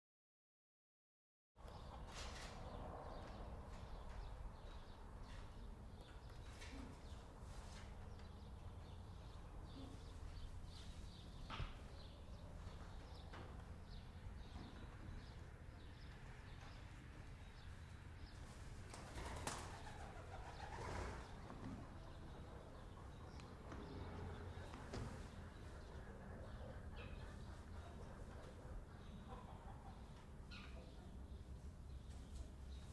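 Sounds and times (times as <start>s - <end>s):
chickens calling: 18.9s - 31.3s.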